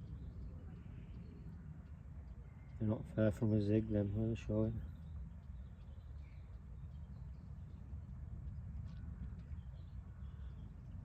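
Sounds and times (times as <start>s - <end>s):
low steady rumble: 0.0s - 11.0s
faint bird calls: 8.8s - 11.0s.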